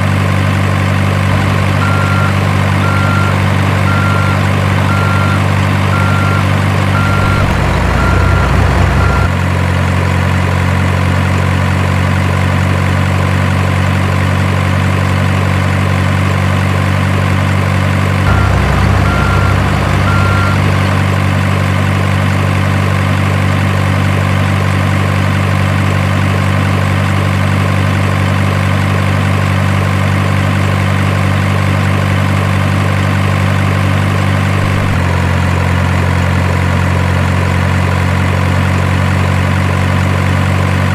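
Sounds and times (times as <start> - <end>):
truck engine idling: 0.0 - 11.4, 12.2 - 36.8
reversing alarm beeping: 1.4 - 9.3, 18.3 - 21.3.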